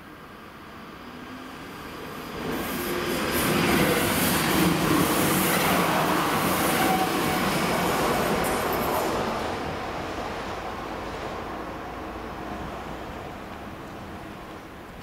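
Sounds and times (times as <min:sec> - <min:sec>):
train wheels rumbling on rails: 0:02.3 - 0:11.8.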